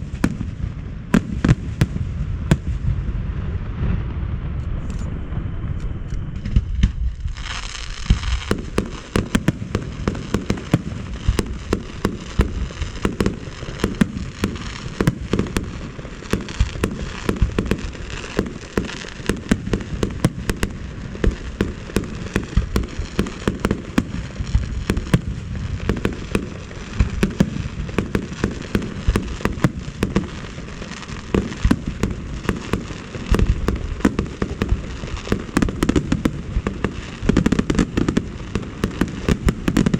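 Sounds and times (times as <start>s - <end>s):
low rumble: 0.0s - 10.0s
fireworks bangs: 0.0s - 39.9s.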